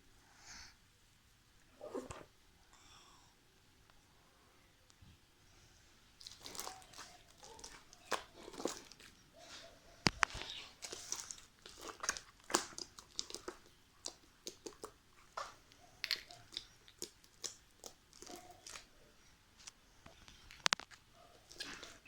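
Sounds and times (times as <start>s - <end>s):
slime crackling and popping: 6.2s - 9.1s, 10.1s - 18.9s.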